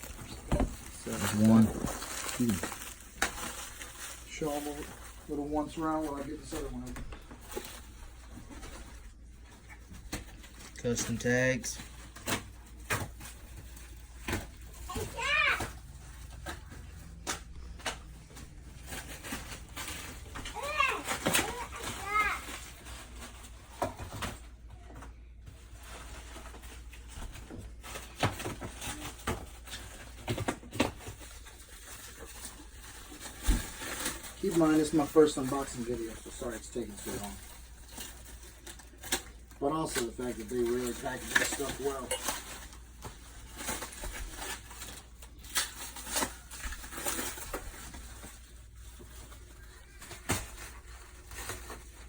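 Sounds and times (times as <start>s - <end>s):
packaging rustling and knocks: 0.0s - 9.1s, 26.0s - 52.0s.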